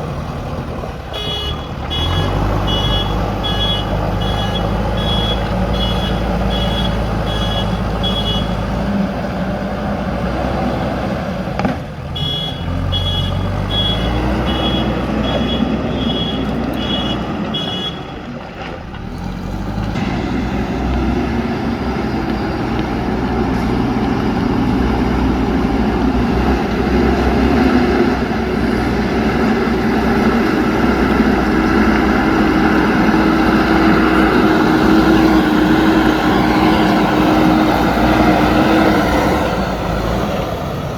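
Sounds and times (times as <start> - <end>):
diesel engine running under load: 0.0 - 40.9
reversing alarm beeping: 1.6 - 8.6, 12.2 - 18.1.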